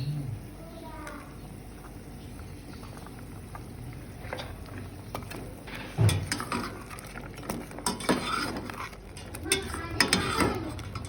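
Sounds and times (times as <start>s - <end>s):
low cooking hiss: 0.0s - 11.0s
utensils clinking on cookware: 5.2s - 11.0s.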